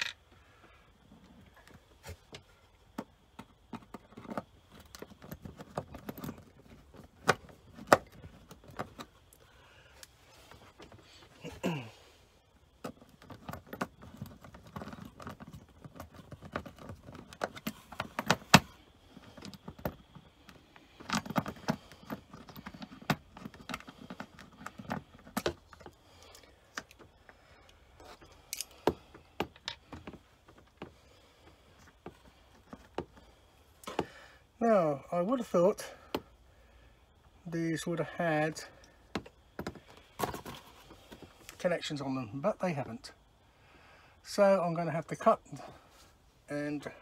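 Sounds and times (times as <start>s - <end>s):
handling rustle: 38.7s - 41.6s.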